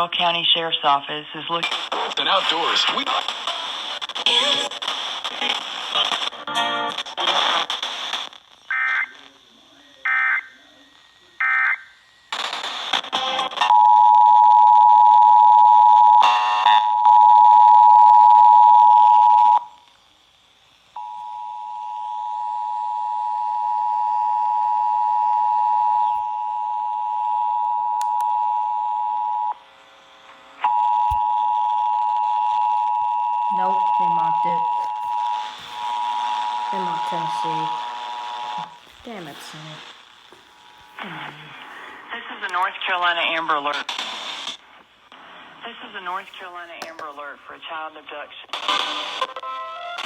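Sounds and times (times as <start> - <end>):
radio static bursts: 0.0 - 13.7, 33.5 - 49.4
data bursts over radio: 0.5 - 13.8, 29.3 - 49.4.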